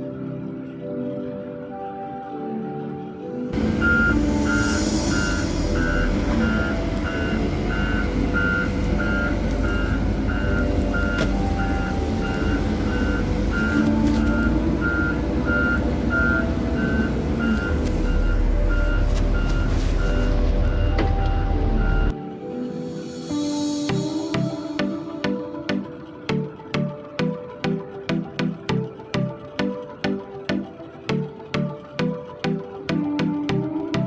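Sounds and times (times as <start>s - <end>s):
diesel engine running: 3.5s - 22.1s
reversing alarm beeping: 3.6s - 22.2s.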